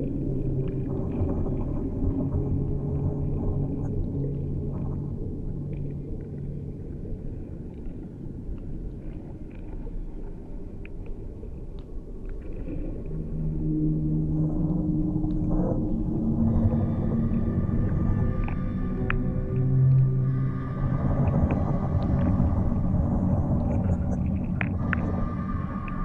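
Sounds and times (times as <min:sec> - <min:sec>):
low rumble: 0:00.0 - 0:26.0
sustained low drone tones: 0:00.0 - 0:26.0
faint ticks: 0:18.3 - 0:20.4.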